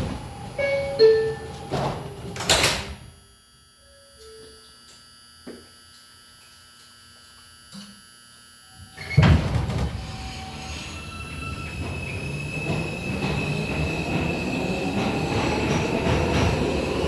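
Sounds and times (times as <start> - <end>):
train doors sliding shut: 0.0 - 3.1, 9.0 - 17.0
train motors and wheels rumbling: 0.0 - 3.2, 9.0 - 17.0.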